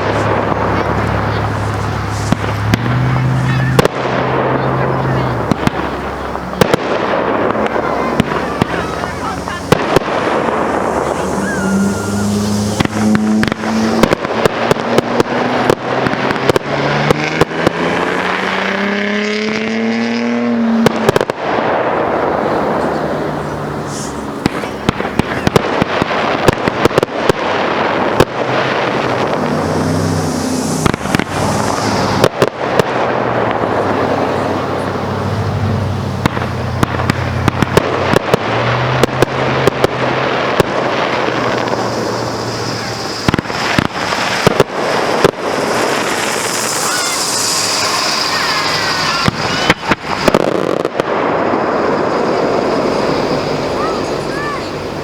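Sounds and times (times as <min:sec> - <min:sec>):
low pitched drone: 0:00.0 - 0:14.1, 0:27.6 - 0:37.8, 0:39.4 - 0:55.0
fireworks bangs: 0:00.0 - 0:55.0
fireworks crackling hiss: 0:00.0 - 0:55.0.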